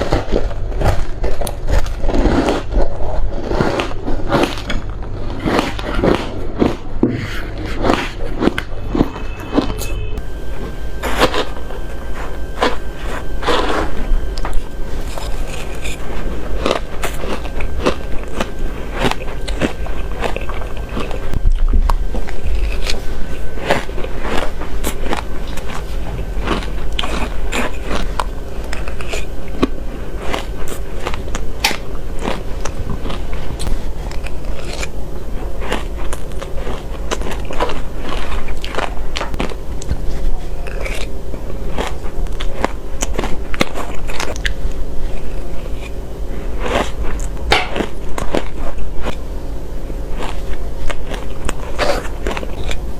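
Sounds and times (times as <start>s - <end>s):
person crunching ice: 0.0s - 9.9s, 12.4s - 35.0s.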